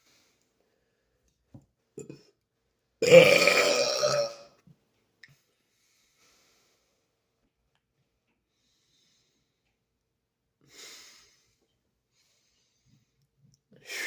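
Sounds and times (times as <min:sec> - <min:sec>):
man breathing quietly: 0:05.3 - 0:07.4, 0:08.4 - 0:09.9, 0:10.6 - 0:13.4.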